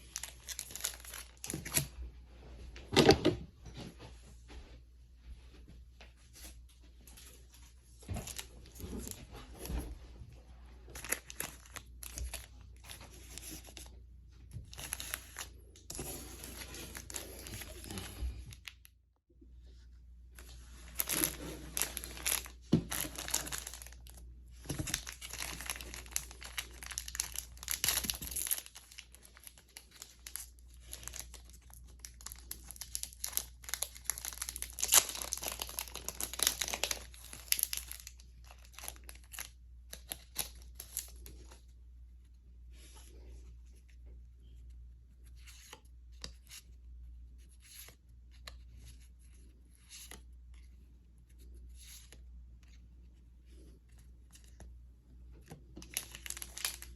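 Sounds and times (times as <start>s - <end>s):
wrapper ripping and rustling: 0.0s - 1.9s, 10.9s - 13.9s, 20.4s - 41.4s, 55.8s - 56.9s
light wrapper crinkles and clicks: 21.0s - 41.6s, 55.3s - 56.9s.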